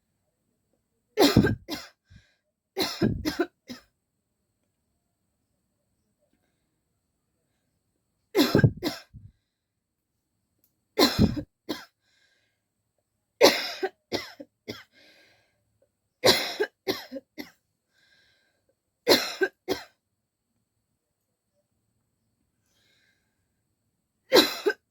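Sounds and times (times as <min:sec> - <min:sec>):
person coughing: 0:01.2 - 0:02.0, 0:02.8 - 0:03.8, 0:08.4 - 0:09.3, 0:11.0 - 0:11.9, 0:16.3 - 0:17.6, 0:19.1 - 0:19.9, 0:24.3 - 0:24.9
faint breaths: 0:02.0 - 0:02.5, 0:06.2 - 0:08.0, 0:11.2 - 0:12.8, 0:14.9 - 0:15.8, 0:17.8 - 0:18.8, 0:22.5 - 0:23.8.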